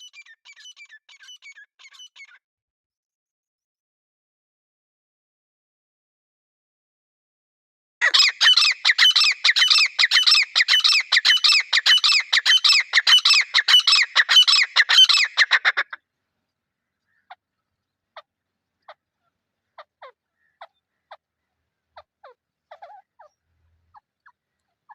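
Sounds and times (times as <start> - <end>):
francolin calling: 8.0 - 15.9.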